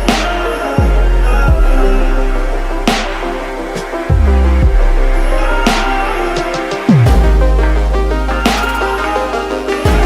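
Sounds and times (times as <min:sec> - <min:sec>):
deep sub-bass sliding down: 0:00.0 - 0:08.6
electronic dance music: 0:00.0 - 0:10.0.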